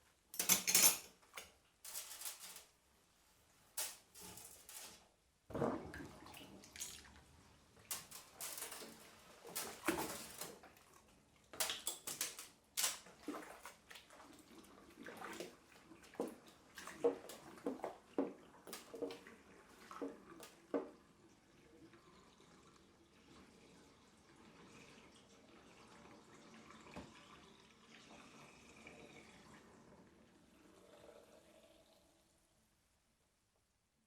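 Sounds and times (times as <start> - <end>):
crockery and cutlery clinking: 0.4 - 2.6
water splashing in sink: 5.5 - 21.0.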